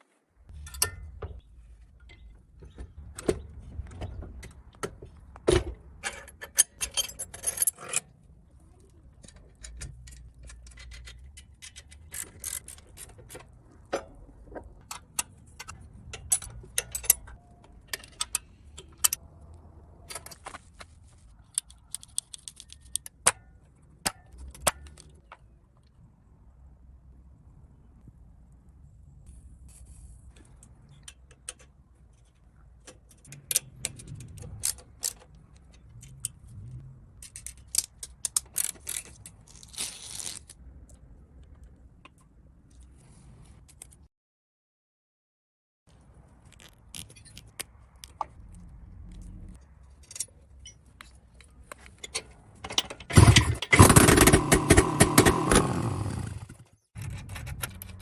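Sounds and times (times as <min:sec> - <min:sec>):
metal parts clicking and clinking: 0:00.5 - 0:03.4, 0:04.3 - 0:19.2, 0:21.4 - 0:25.6, 0:30.3 - 0:40.6, 0:49.1 - 0:53.8.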